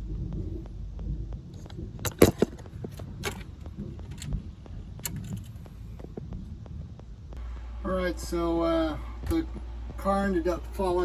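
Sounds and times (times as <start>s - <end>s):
faint fast regular ticking: 0.0s - 11.0s
short metallic rattle: 2.0s - 4.3s.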